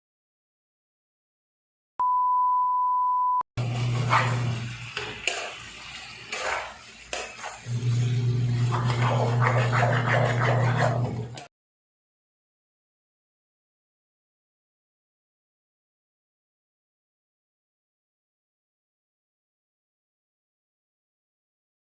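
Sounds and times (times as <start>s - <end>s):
electronic beep: 2.0s - 3.4s.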